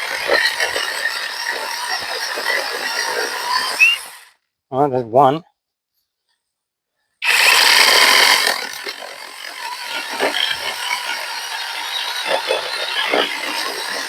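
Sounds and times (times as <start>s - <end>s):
chainsaw cutting log: 0.0s - 4.4s, 7.2s - 14.0s.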